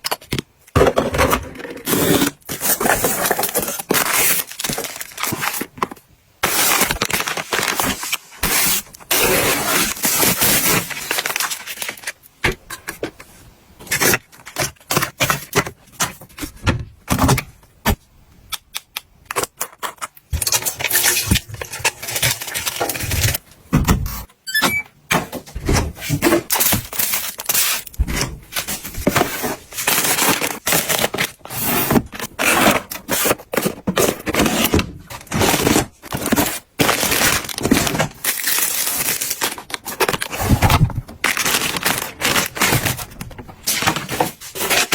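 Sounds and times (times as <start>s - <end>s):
plastic packaging crinkling and clicking: 0.0s - 9.2s, 9.9s - 17.6s, 18.5s - 23.6s, 25.1s - 44.9s.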